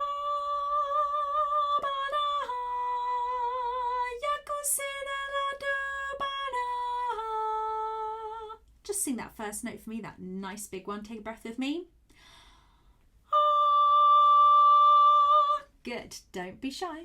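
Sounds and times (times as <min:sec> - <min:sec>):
woman singing unaccompanied: 0:00.0 - 0:08.6, 0:13.3 - 0:17.0.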